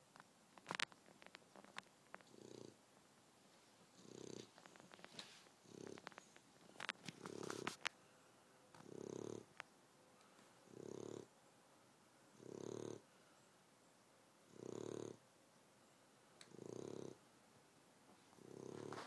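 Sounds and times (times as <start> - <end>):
dog snoring: 2.3 - 2.8, 4.0 - 4.5, 5.6 - 6.1, 8.8 - 9.5, 10.7 - 11.3, 12.4 - 13.0, 14.5 - 15.2, 16.5 - 17.2, 18.4 - 19.0.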